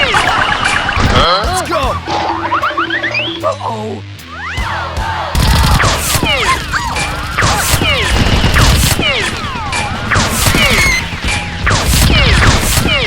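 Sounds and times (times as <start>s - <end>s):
background music: 0.0s - 13.0s
blaster shots and impacts: 5.4s - 13.0s
falling whistling tones: 9.0s - 11.4s.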